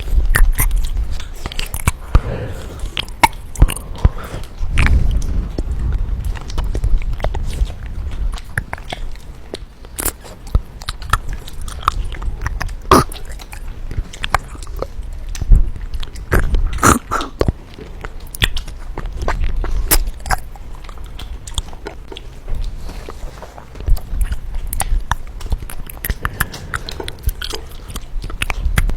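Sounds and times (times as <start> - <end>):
wet mouth clicks: 0.0 - 22.8, 23.8 - 28.9
person chewing food: 0.0 - 28.9.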